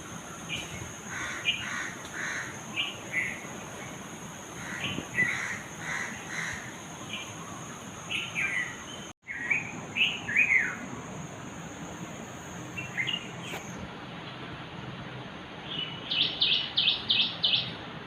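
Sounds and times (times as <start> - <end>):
birds chirping: 0.0 - 10.9, 12.7 - 13.8.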